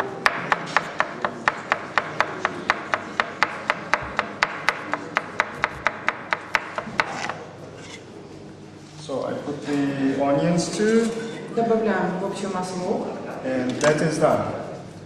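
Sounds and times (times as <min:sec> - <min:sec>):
knife chopping on cutting board: 0:00.2 - 0:07.4.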